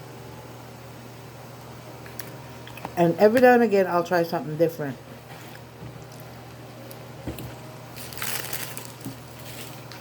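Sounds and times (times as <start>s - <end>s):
steady low hum: 0.0s - 10.0s
crinkly rustle: 7.9s - 10.0s.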